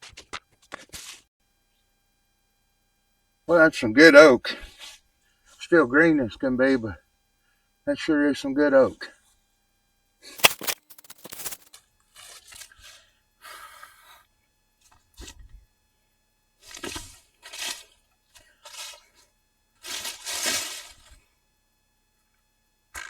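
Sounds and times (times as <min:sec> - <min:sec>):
branches crunching and scraping: 0:10.4 - 0:11.7.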